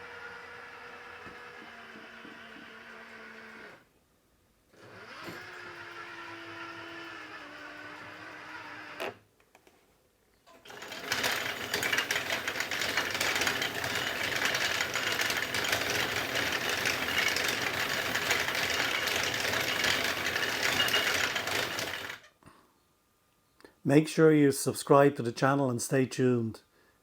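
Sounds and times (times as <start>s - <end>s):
toy tank mechanical rattle: 10.7s - 22.2s.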